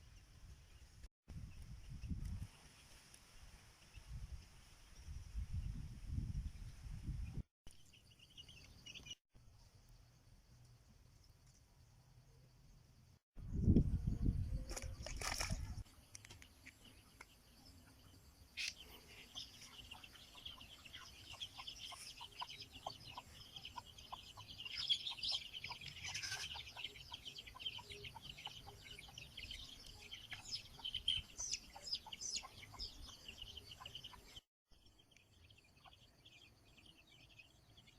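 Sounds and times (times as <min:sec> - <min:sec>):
high chirping: 0:18.5 - 0:34.3
chickens clucking: 0:18.6 - 0:29.6, 0:30.2 - 0:34.3.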